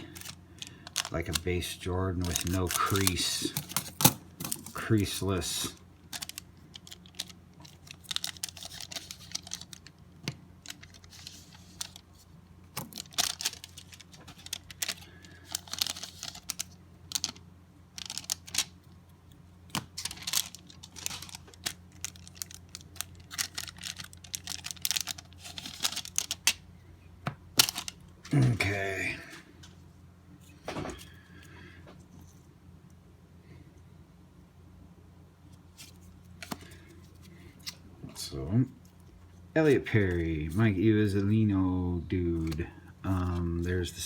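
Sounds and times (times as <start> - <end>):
steady low hum: 0.0 - 44.0
cards clicking and flicking: 2.2 - 5.3.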